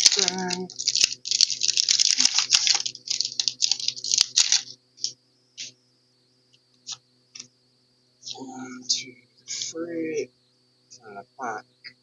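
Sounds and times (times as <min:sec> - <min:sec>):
foil wrapper crinkling: 0:00.0 - 0:05.7.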